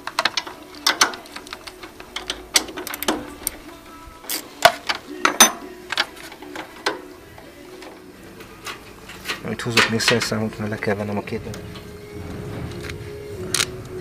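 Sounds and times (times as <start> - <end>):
metal tools clicking and clinking: 0.0 - 7.1
background music: 0.0 - 14.0.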